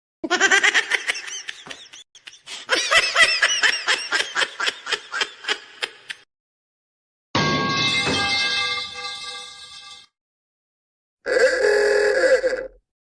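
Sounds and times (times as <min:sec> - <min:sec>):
high-pitched laughter: 0:00.2 - 0:06.2.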